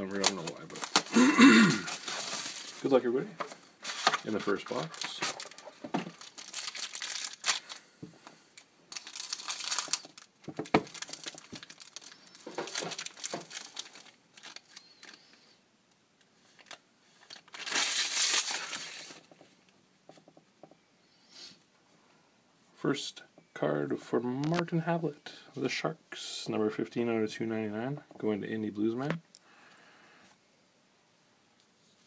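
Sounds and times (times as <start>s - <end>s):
plastic wrapping crinkling and tearing: 0.0s - 3.0s, 3.8s - 7.8s, 8.6s - 15.4s, 16.5s - 19.3s.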